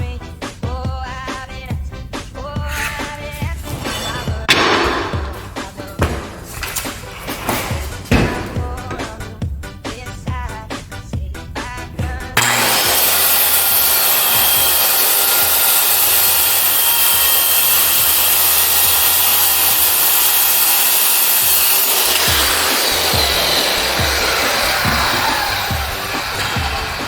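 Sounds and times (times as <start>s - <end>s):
circular saw cutting plywood: 1.2s - 9.4s, 11.6s - 27.0s
saw blade spinning down: 12.4s - 27.0s.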